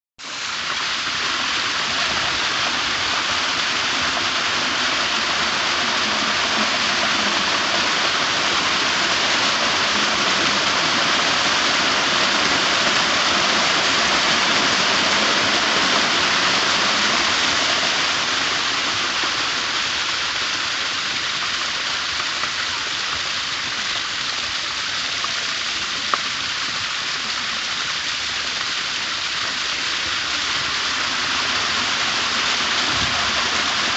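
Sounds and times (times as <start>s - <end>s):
waterfall rushing: 0.2s - 33.9s.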